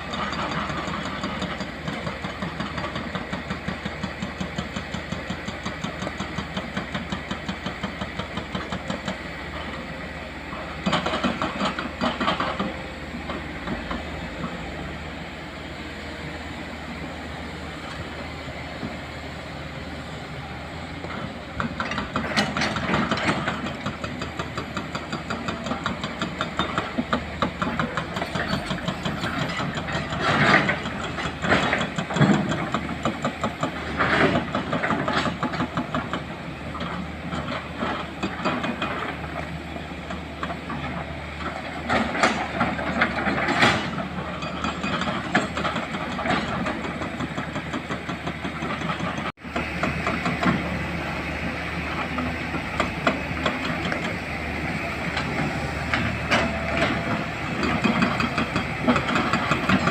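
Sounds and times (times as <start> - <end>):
diesel excavator engine running: 0.0 - 59.9
hydraulic rock breaker hammering: 40.1 - 59.9.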